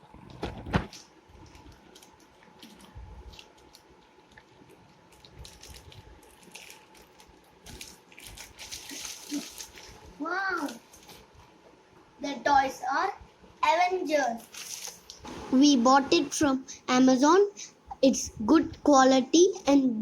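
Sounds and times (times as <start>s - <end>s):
cardboard and plastic rustling: 0.0s - 11.6s.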